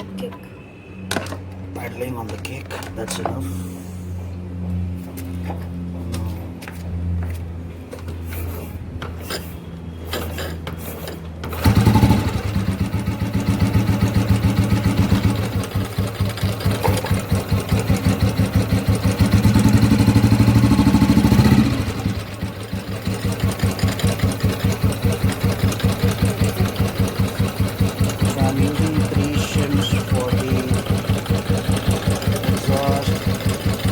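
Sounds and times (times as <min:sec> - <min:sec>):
motorcycle engine running: 0:11.4 - 0:33.9.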